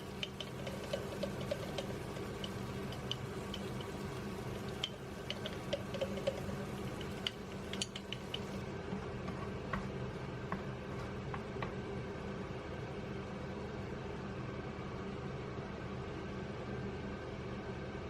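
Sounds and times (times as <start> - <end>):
light clicks and ticks: 0.0 - 8.6
steady low hum: 0.0 - 18.0.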